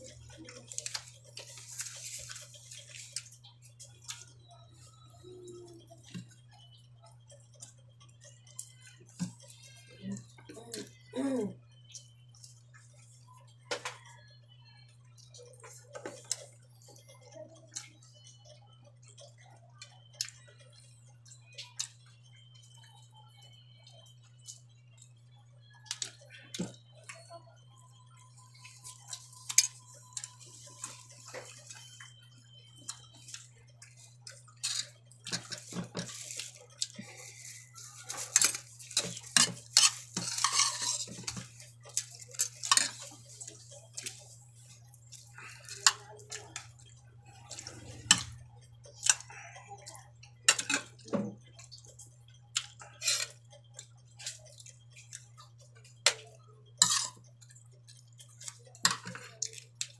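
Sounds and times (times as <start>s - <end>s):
low steady hum: 0.0s - 59.9s
utensils clinking on a plate: 28.3s - 32.1s, 32.8s - 49.4s, 50.4s - 59.9s.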